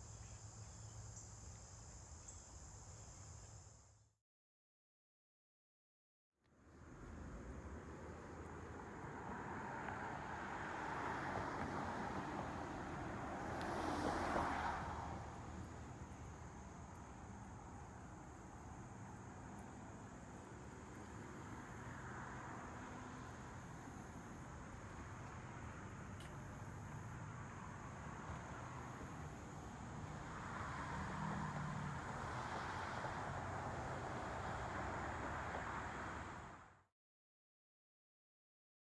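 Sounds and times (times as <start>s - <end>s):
vehicle passing by: 6.7s - 17.9s, 25.6s - 36.8s.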